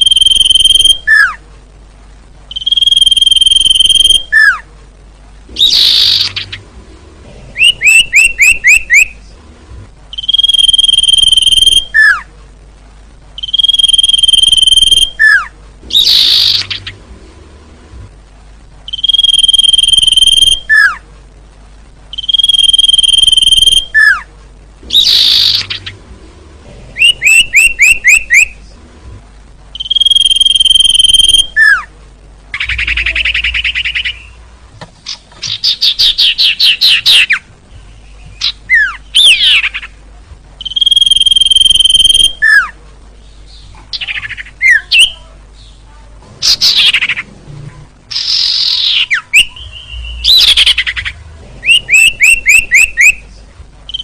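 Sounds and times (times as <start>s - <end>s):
bird song with whistles and trills: 0.0s - 1.4s, 2.5s - 4.6s, 5.6s - 6.6s, 7.6s - 9.2s, 10.1s - 12.3s, 13.4s - 17.0s, 18.9s - 21.0s, 22.1s - 24.3s, 24.9s - 26.0s, 27.0s - 28.6s, 29.8s - 31.9s, 32.6s - 34.4s, 35.1s - 39.9s, 40.6s - 42.7s, 48.1s - 53.2s.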